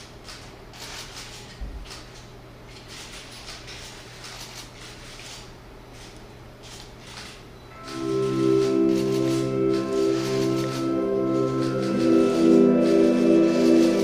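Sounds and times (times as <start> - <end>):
audience rustling and shuffling: 6.0 - 14.0
low hum: 7.7 - 14.0.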